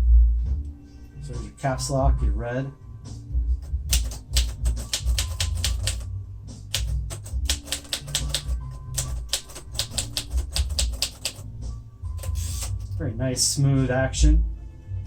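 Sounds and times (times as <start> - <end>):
typewriter keys clacking: 3.6 - 6.1, 6.7 - 11.5, 12.2 - 13.0.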